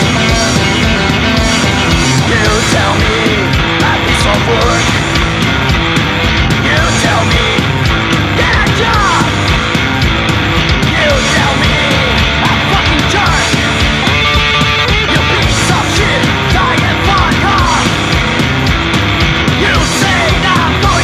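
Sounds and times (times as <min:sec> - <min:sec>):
rock music with steady beat: 0:00.0 - 0:21.0
person yelling or singing: 0:01.8 - 0:05.0, 0:06.6 - 0:07.6, 0:08.3 - 0:09.4, 0:10.9 - 0:18.0, 0:19.6 - 0:21.0.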